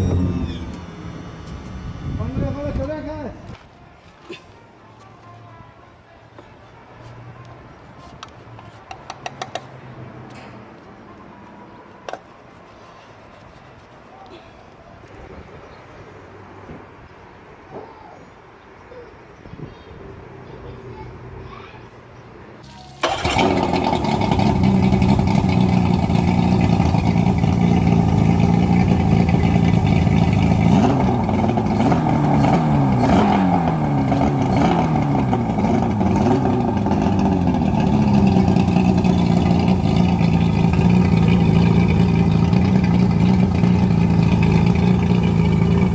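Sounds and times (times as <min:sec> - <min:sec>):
engine revving: 0:00.0 - 0:02.9, 0:23.0 - 0:45.9.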